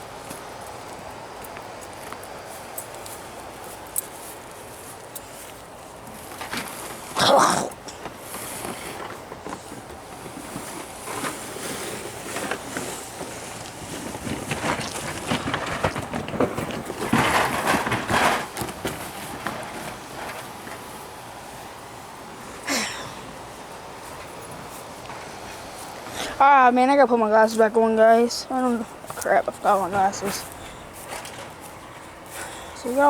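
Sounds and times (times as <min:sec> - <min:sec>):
junk clattering: 0:14.2 - 0:20.8.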